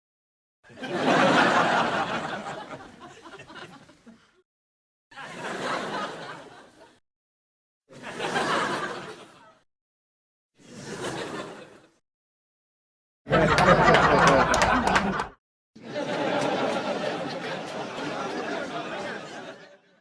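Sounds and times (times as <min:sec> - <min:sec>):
laugh track crowd laughter: 0:00.7 - 0:04.4, 0:05.1 - 0:07.0, 0:07.9 - 0:09.6, 0:10.6 - 0:12.0, 0:13.3 - 0:20.0.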